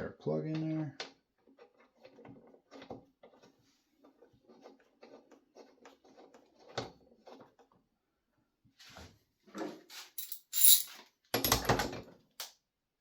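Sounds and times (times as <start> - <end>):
small clicks and scrapes: 1.4 - 7.7.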